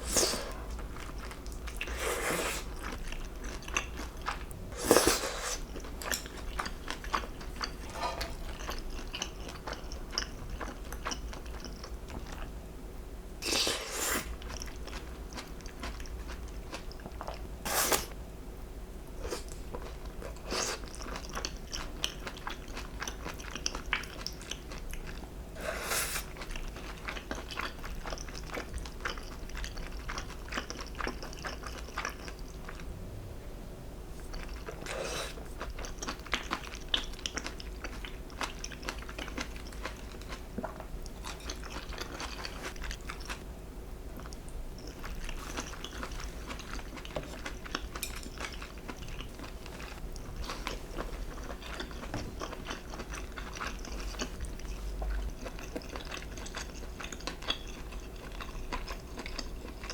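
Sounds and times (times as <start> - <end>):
chewing with crisp crunching: 0.0 - 12.6, 13.4 - 18.2, 19.1 - 32.9, 34.2 - 59.9.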